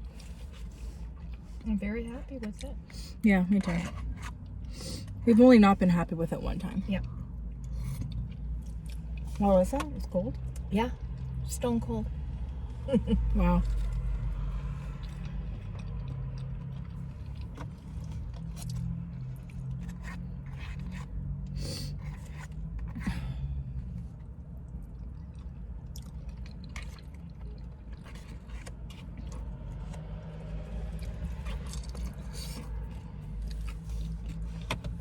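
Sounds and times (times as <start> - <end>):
person chewing: 7.6 - 9.4, 13.6 - 23.5, 24.6 - 35.0.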